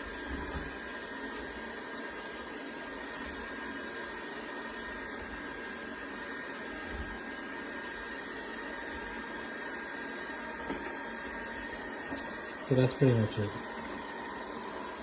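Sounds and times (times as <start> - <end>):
robot vacuum running: 0.0 - 15.0.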